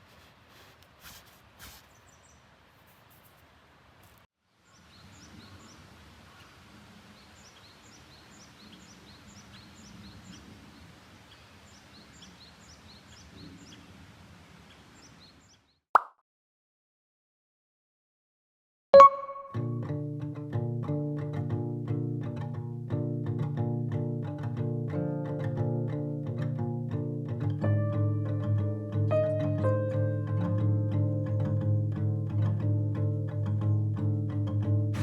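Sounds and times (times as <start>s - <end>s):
low forest background: 0.0s - 15.9s, 19.1s - 35.0s.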